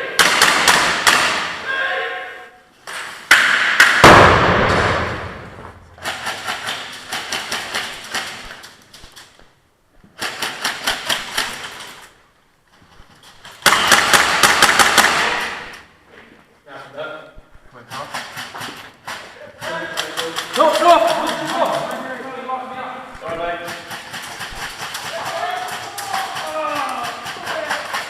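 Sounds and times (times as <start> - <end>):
airsoft guns firing: 0.1 - 1.6, 3.3 - 8.7, 10.2 - 12.0, 13.4 - 15.9, 18.1 - 22.2, 23.5 - 28.0
loud bang with long echo: 3.3 - 6.0.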